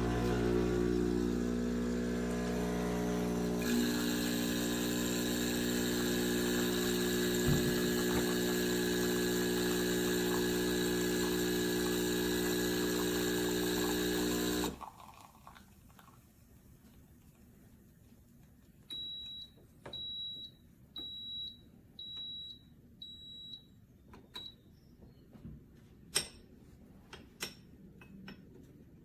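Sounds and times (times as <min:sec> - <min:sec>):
espresso machine pump hum: 0:00.0 - 0:15.1.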